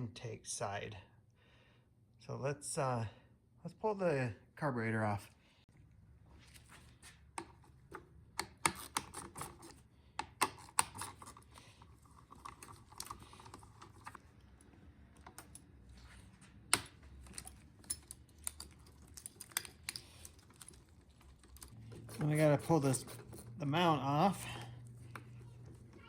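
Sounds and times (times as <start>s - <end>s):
hand tools clicking on small parts: 16.7s - 21.8s.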